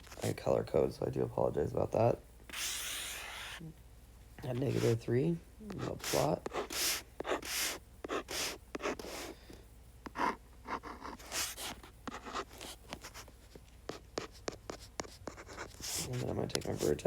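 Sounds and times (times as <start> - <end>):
pen scratching on paper: 2.5 - 3.6, 4.5 - 5.0, 5.7 - 9.4, 10.0 - 13.3, 13.9 - 17.0.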